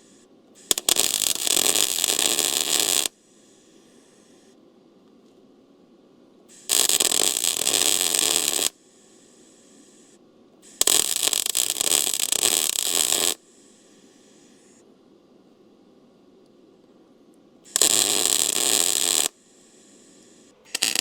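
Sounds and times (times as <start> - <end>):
arc welding crackling: 0.0 - 4.5, 6.5 - 14.8, 17.7 - 21.0.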